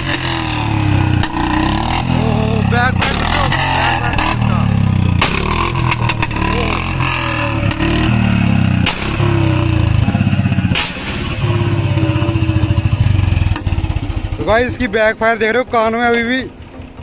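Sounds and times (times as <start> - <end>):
motorcycle engine revving: 0.0 - 17.0
backfire pops: 5.1 - 11.6.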